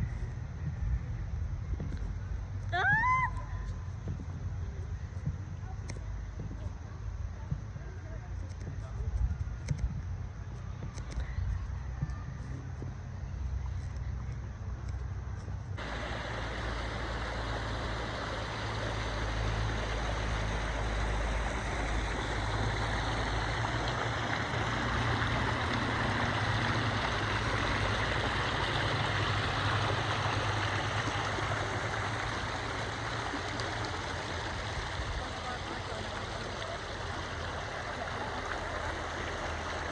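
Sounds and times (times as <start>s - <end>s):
waterfall rushing: 15.8s - 39.9s.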